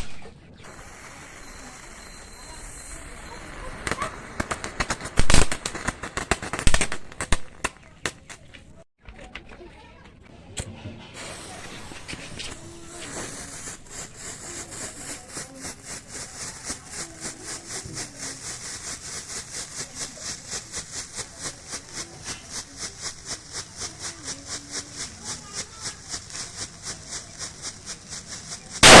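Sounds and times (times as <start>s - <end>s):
crackling firework fizzing: 0.0s - 8.8s, 11.2s - 29.0s.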